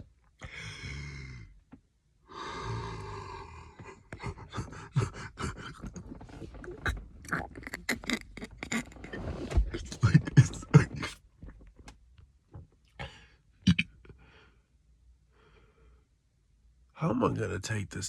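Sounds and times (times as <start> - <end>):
man rasping wet breath: 2.3 - 6.2.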